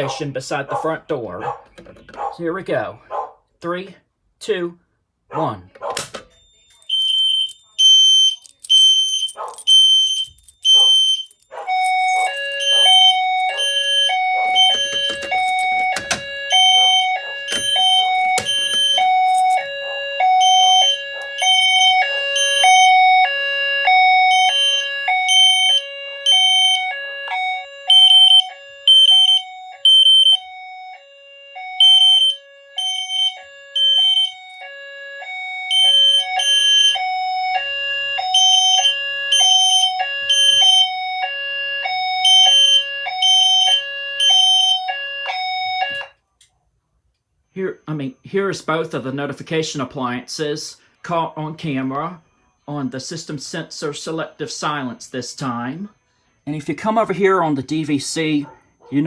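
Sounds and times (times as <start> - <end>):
high fire alarm horn beeping: 6.3 - 46.2
two-note high-low alarm tone: 10.7 - 41.4.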